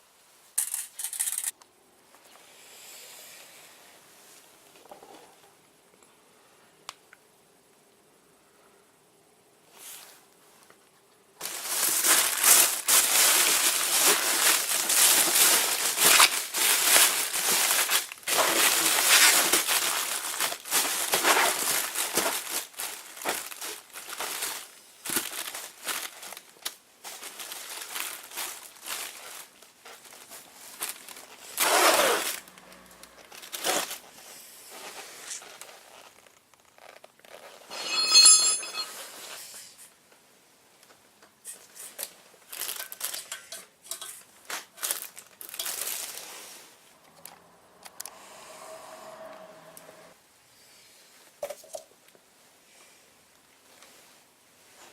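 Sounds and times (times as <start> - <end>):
crinkling of crumpled bag: 11.4 - 38.1, 41.5 - 46.8.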